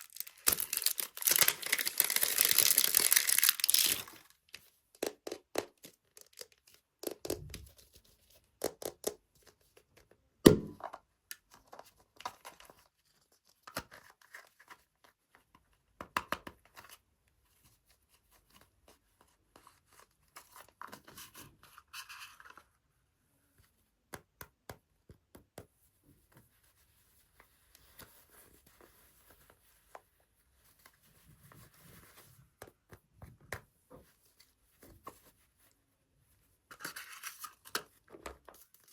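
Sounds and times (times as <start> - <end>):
packaging tearing and crinkling: 0.0 - 4.6.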